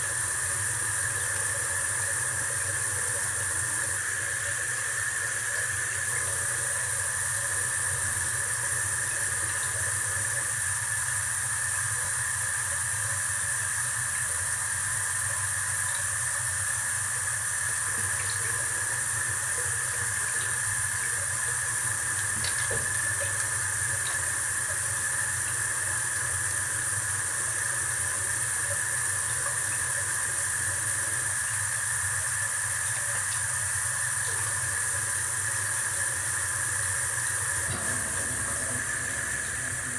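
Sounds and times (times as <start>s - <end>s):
steady hiss: 37.4s - 39.9s
low hum: 37.7s - 39.9s.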